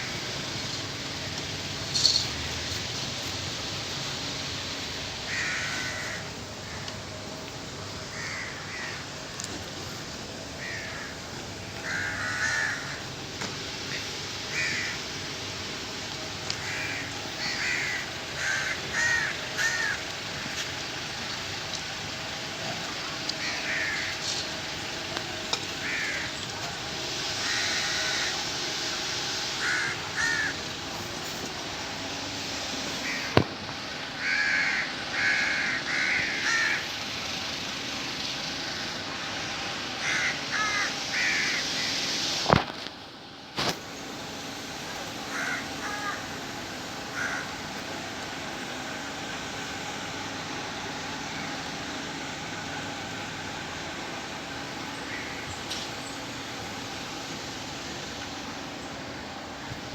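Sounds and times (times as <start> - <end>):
crows cawing: 0.0 - 0.4, 5.2 - 7.0, 8.0 - 9.6, 10.5 - 13.2, 13.9 - 15.3, 16.5 - 21.8, 22.5 - 28.7, 29.5 - 30.8, 32.9 - 33.4, 34.0 - 37.0, 38.6 - 39.4, 40.0 - 42.1, 45.2 - 48.0, 54.9 - 55.9
background hiss: 0.0 - 59.9.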